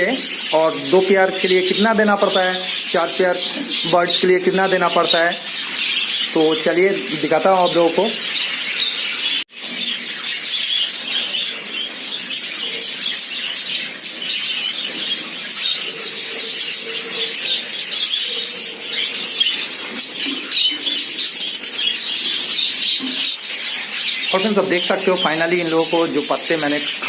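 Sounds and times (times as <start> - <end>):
budgerigars chattering: 0.0 - 27.0.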